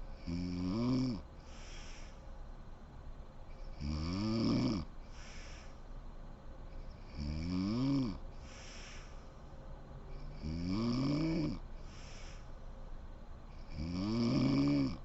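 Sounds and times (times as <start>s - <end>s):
woman snoring: 0.2s - 1.2s, 3.8s - 4.9s, 7.1s - 8.2s, 10.3s - 11.6s, 13.6s - 15.0s.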